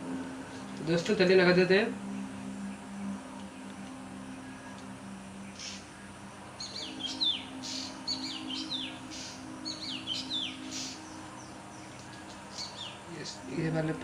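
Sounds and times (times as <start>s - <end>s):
low steady hum: 0.0s - 14.0s
small bird chirping: 6.6s - 13.3s.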